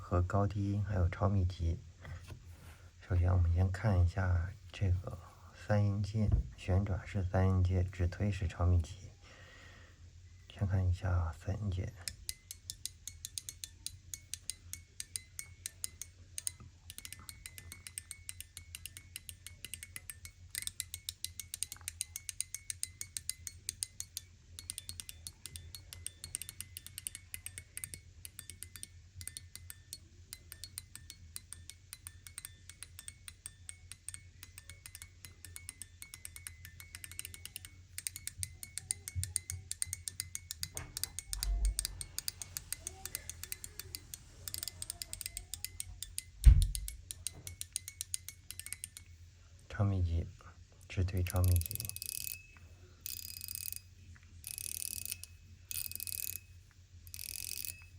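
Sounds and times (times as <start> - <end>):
fidget toy clicking: 11.4 - 49.2, 51.2 - 57.9.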